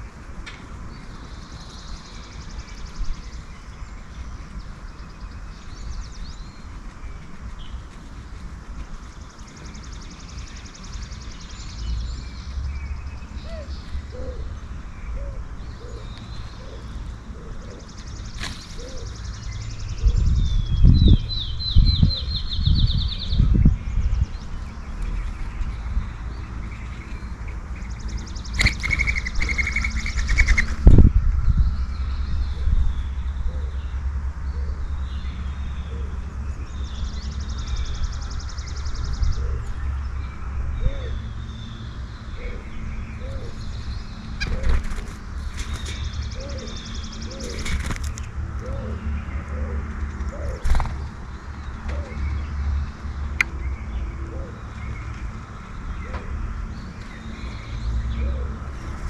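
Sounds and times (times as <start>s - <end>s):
steady low rumble: 0.0s - 59.0s
bird trills: 28.2s - 30.8s
wing flutters: 28.4s - 31.0s, 44.4s - 46.2s, 47.3s - 48.3s, 49.9s - 51.2s.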